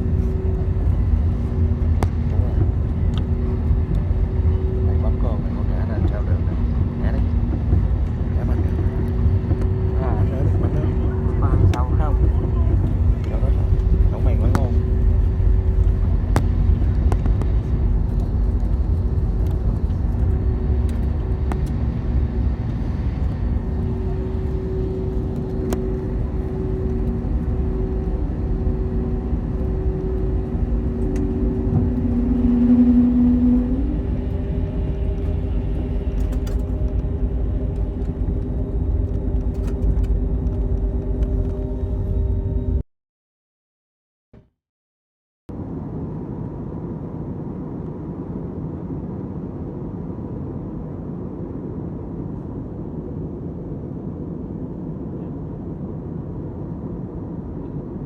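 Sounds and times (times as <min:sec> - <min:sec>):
humming tones: 0:00.0 - 0:42.8
jet engines rumbling: 0:00.0 - 0:42.8
rising tone: 0:20.3 - 0:39.1.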